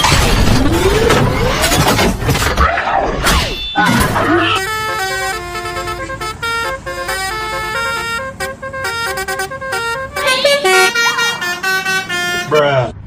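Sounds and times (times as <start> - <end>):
bus horn tooting melody: 3.6 - 12.9.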